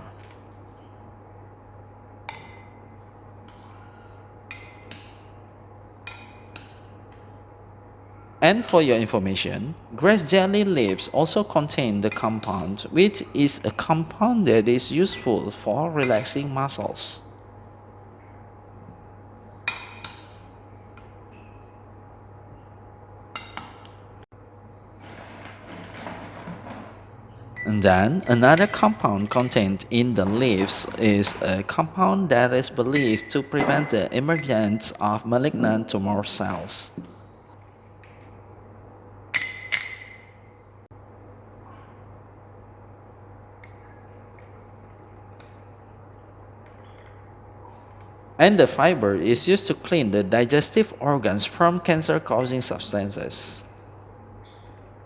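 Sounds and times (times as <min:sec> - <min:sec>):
steady low hum: 0:00.0 - 0:25.0, 0:26.4 - 0:55.0
utensils clinking against dishes: 0:14.7 - 0:16.8, 0:25.1 - 0:37.1, 0:39.3 - 0:40.5
glass clinking: 0:27.6 - 0:31.0, 0:32.8 - 0:35.0, 0:39.3 - 0:40.5.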